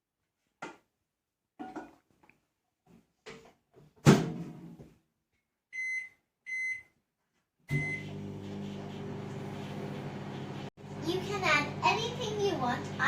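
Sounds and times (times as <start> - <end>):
microwave beeps: 5.8 - 7.0, 7.7 - 8.2
microwave humming: 7.7 - 13.0.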